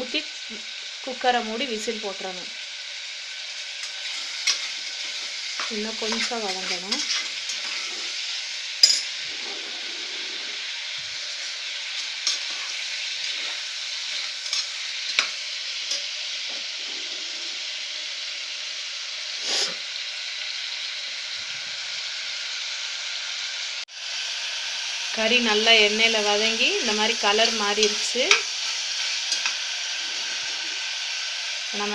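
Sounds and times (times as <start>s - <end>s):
meat sizzling in hot oil: 0.0s - 31.9s
spoon clicking and scraping pot: 5.6s - 7.9s, 29.3s - 29.6s.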